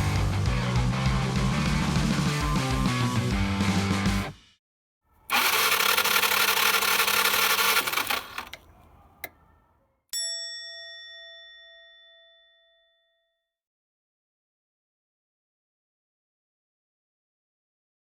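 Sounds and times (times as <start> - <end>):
bell-like ding: 10.2 - 13.5.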